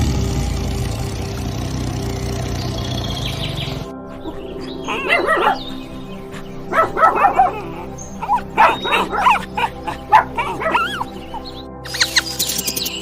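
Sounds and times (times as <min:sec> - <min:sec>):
background music with held tones: 0:00.0 - 0:13.0
dog calling: 0:02.8 - 0:12.2.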